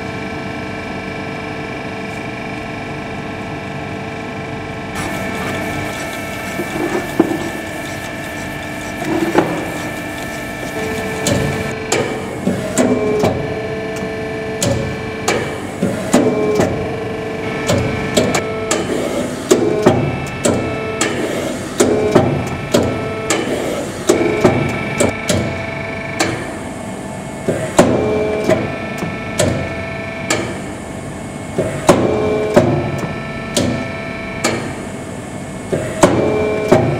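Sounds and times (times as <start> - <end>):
steady machine tone: 4.9 - 11.9
press brake machine hum: 4.9 - 24.8.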